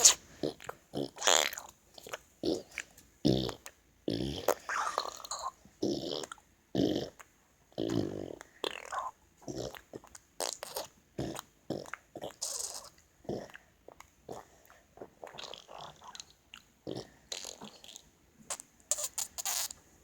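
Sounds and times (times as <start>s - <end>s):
boy making fart noises: 0.0s - 0.2s.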